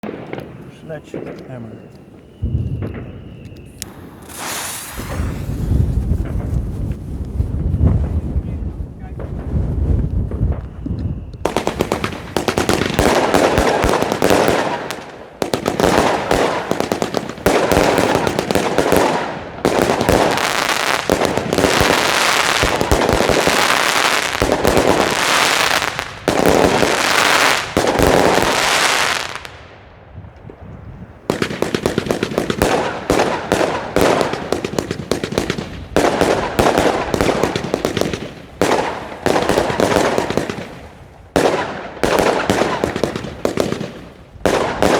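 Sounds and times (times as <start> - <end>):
firework cake firing volleys: 2.8 - 8.2, 11.5 - 29.5.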